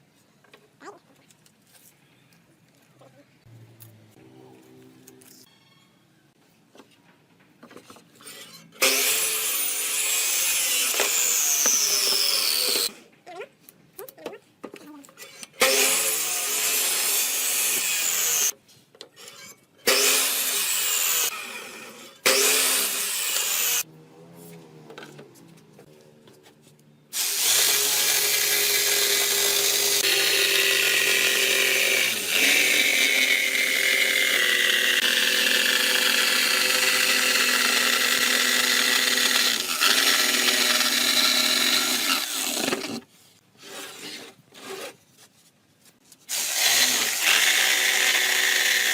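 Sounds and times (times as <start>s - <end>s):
electric power tool cutting wood: 8.8s - 12.9s, 15.6s - 18.6s, 19.9s - 23.9s, 27.1s - 43.0s, 46.3s - 48.9s.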